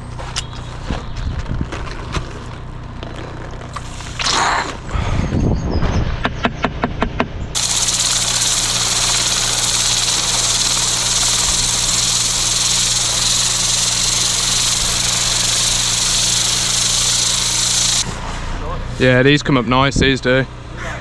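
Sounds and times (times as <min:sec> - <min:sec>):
pressure washer jet hissing: 0:07.6 - 0:18.5
pressure washer engine hum: 0:07.6 - 0:18.6.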